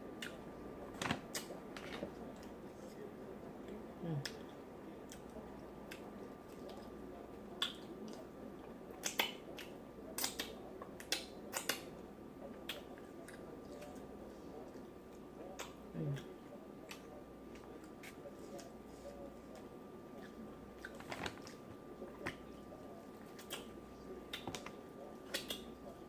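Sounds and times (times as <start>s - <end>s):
mouth smacks and chewing clicks: 7.6s - 8.2s, 9.0s - 11.9s, 24.3s - 25.8s.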